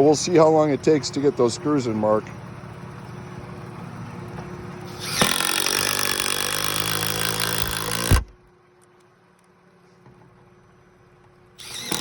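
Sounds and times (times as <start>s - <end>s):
impact driver whine and hammering: 4.4s - 8.5s, 11.6s - 12.0s.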